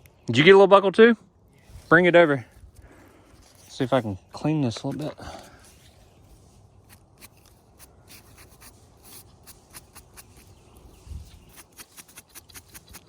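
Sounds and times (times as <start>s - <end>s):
fingers scraping dirt off metal: 6.8s - 10.6s, 11.3s - 13.0s.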